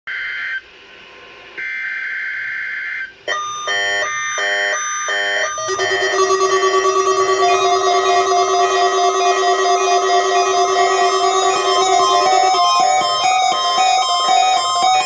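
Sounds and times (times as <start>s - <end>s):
harsh buzzing data bursts: 3.8s - 15.0s
electronic synthesizer music: 5.1s - 15.0s.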